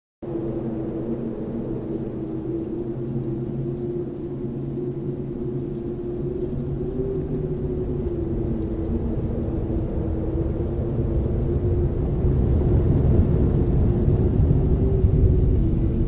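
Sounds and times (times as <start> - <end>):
low rumbling drone: 0.2 - 16.0
wavering hum: 0.2 - 16.0.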